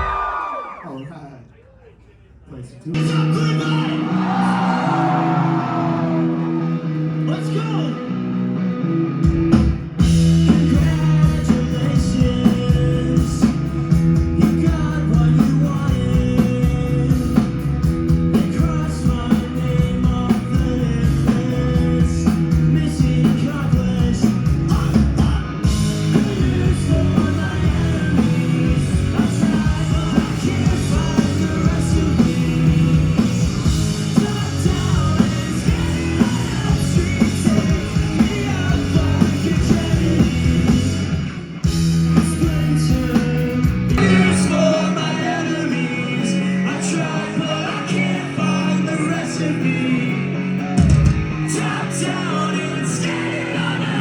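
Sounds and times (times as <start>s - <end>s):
guitar: 2.9s - 54.0s
live rock band playing: 5.0s - 54.0s
person singing: 18.3s - 40.8s, 42.3s - 54.0s.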